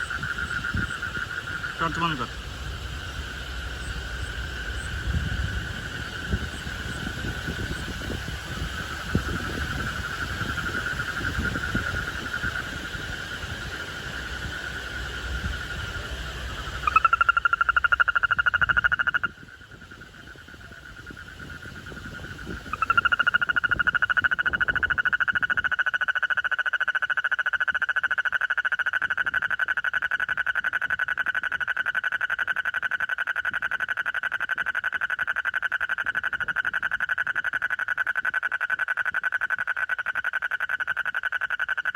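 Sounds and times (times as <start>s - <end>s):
frog high-pitched trill: 16.5s - 41.9s.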